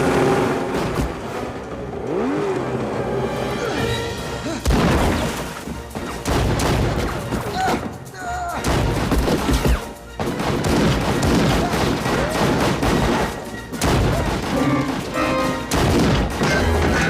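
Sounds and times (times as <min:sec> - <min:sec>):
film score music: 0:00.0 - 0:17.0
rapid gunfire: 0:05.9 - 0:07.4, 0:08.6 - 0:17.0.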